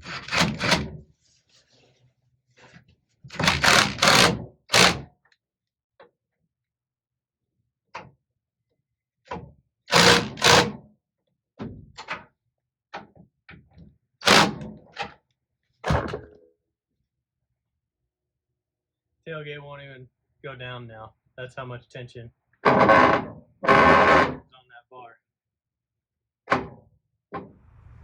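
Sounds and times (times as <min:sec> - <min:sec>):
impact driver bursts: 0:00.0 - 0:00.9, 0:03.4 - 0:05.1, 0:09.9 - 0:10.8, 0:14.2 - 0:14.6.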